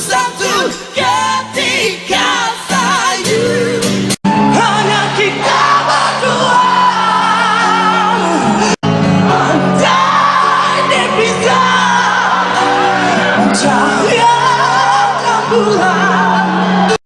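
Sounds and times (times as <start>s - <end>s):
rock band accompaniment: 0.0s - 14.5s
man singing rock: 0.0s - 17.0s.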